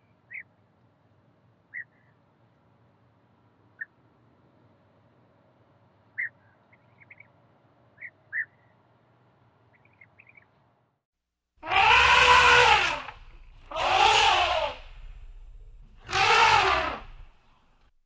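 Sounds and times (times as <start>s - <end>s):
drawn-out animal call: 11.6s - 17.4s.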